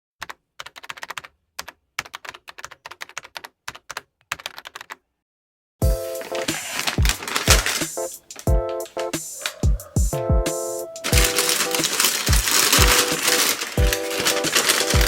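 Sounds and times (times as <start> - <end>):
mechanical keyboard typing: 0.2 - 5.0, 6.1 - 10.3, 11.0 - 15.0
loud music with heavy beat: 5.8 - 15.0.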